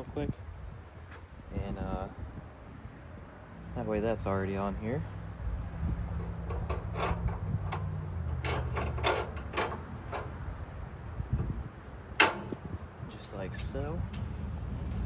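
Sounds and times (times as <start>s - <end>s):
metal parts clicking and clunking: 5.1s - 10.8s, 11.4s - 15.0s.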